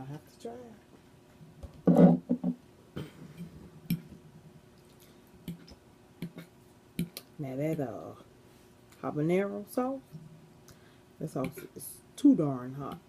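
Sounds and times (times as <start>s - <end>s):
person eating mouth sounds: 4.8s - 7.3s.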